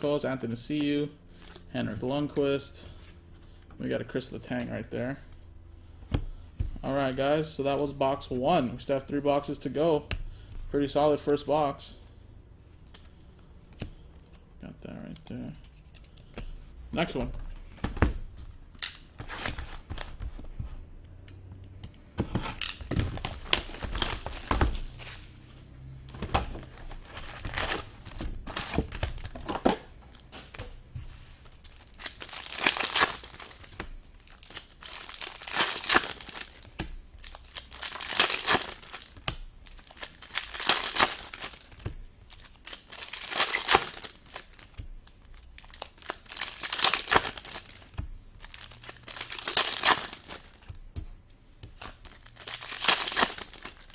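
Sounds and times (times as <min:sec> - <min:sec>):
card pack wrappers tearing: 0:22.6 - 0:26.0, 0:26.6 - 0:30.5, 0:31.6 - 0:50.7, 0:51.8 - 0:53.9.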